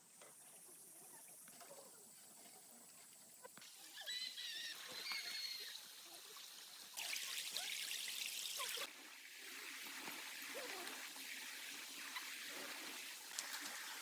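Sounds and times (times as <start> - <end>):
water pouring rush: 4.8 - 14.0
water trickling: 4.8 - 14.0.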